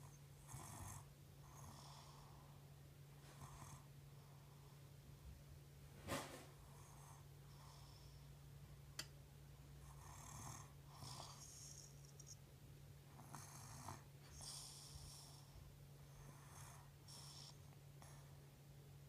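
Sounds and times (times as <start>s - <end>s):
baby snoring: 9.9s - 12.3s.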